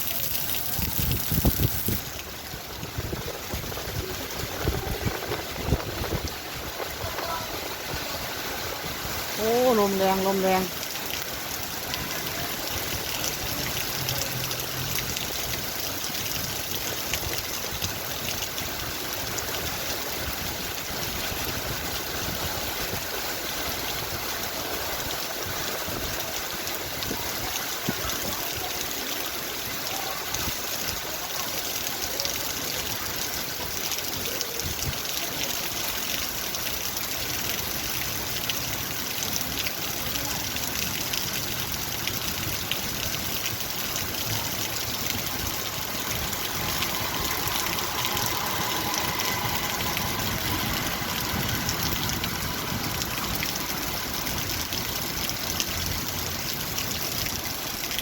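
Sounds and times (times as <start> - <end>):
heavy rain in strong wind: 0.0 - 58.0.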